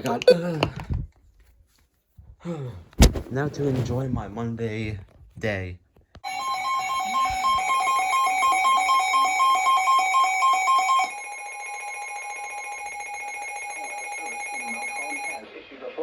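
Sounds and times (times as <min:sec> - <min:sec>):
loud two-tone alarm pulsing: 0:06.2 - 0:15.4.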